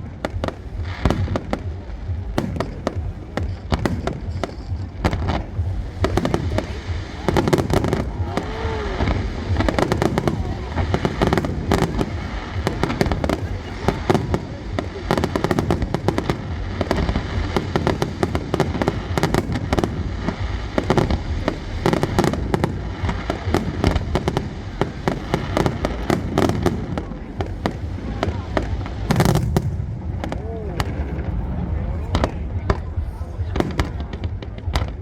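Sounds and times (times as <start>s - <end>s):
fireworks bangs and crackling: 0.0s - 35.0s
low rumble: 0.0s - 35.0s.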